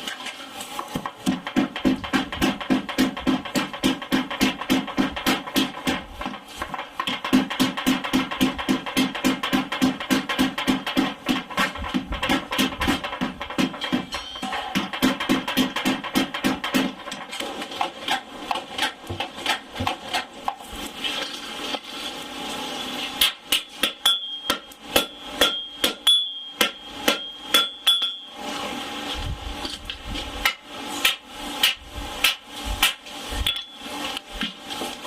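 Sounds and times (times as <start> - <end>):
hammer striking steel on anvil: 1.2 - 6.1, 7.0 - 17.4, 23.2 - 28.4, 30.4 - 33.8
ringing tone: 25.5 - 28.3.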